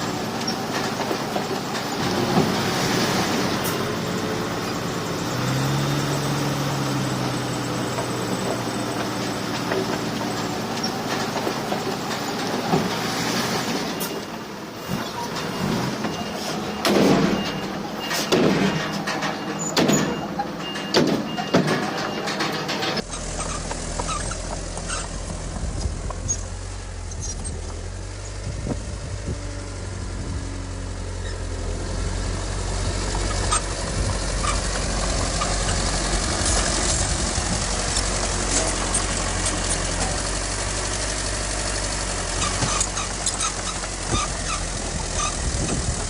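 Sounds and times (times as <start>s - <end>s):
loud machinery clanks: 0.0s - 25.2s, 32.9s - 46.0s
diesel engine running: 0.0s - 46.0s.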